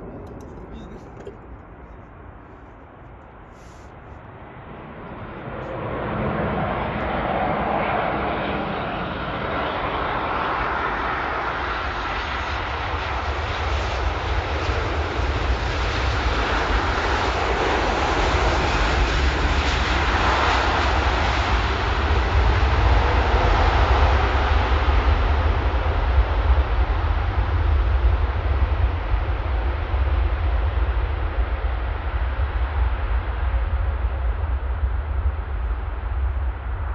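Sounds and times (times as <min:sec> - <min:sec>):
jet engines roaring: 0:00.0 - 0:36.9.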